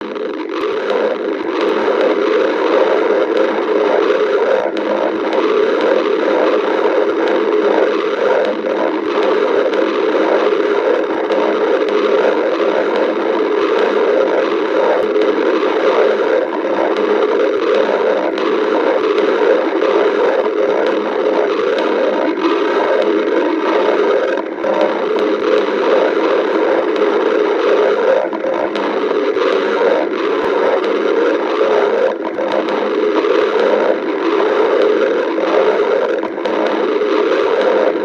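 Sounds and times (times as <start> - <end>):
stomach growling: 0.0 - 38.0.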